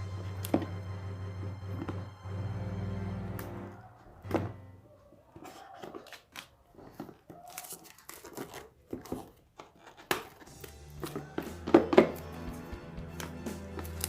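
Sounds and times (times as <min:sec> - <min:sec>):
plastic packaging tearing: 0:06.0 - 0:11.2.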